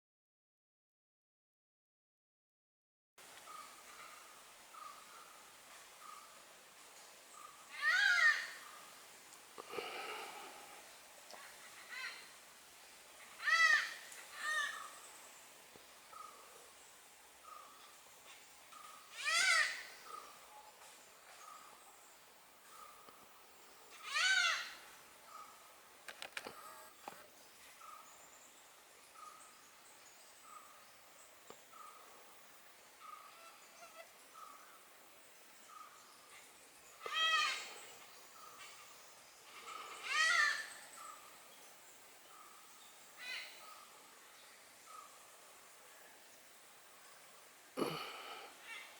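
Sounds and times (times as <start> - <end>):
hornbill cackling calls: 7.4 - 8.9, 13.2 - 15.0, 18.8 - 20.3, 23.9 - 25.5, 37.0 - 38.9, 39.5 - 41.2.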